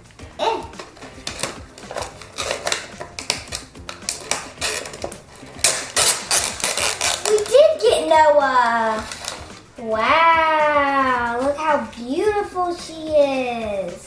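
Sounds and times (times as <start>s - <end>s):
plastic packaging crinkling: 1.0s - 7.8s, 8.8s - 9.7s.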